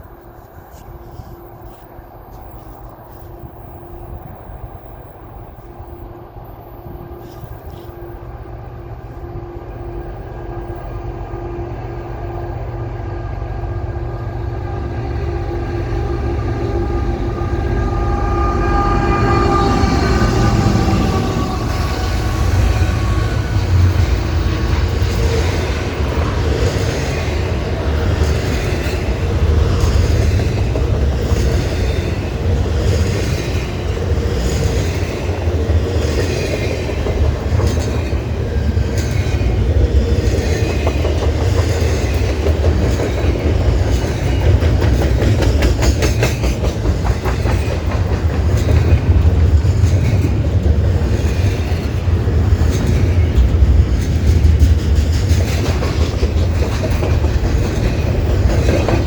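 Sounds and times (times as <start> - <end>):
freight train wheels rumbling on rails: 0.0 - 59.0
clickety-clack over rail joints: 15.6 - 59.0.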